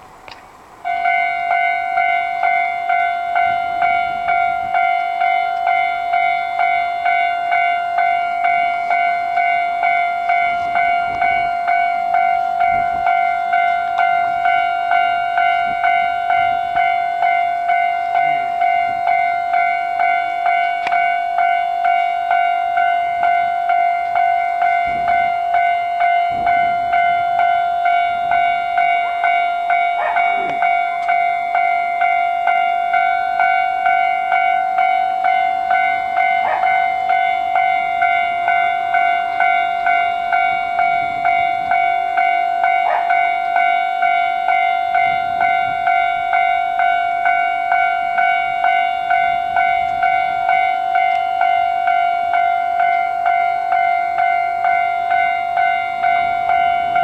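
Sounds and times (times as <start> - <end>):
level crossing bell clanging: 0.9 - 57.0.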